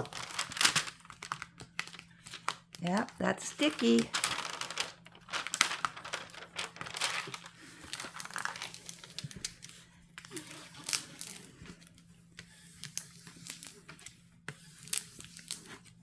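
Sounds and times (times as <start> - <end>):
plastic film crinkling: 0.0 - 11.5.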